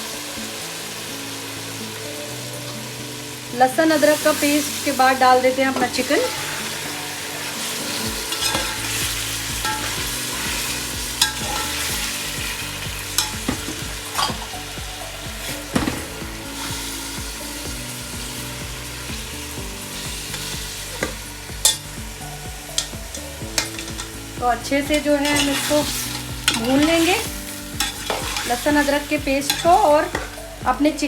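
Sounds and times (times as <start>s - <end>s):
chicken sizzling in hot oil: 0.0s - 31.0s
spoon scraping and knocking pan: 5.7s - 14.7s, 15.3s - 17.4s, 20.0s - 21.9s, 22.7s - 30.5s.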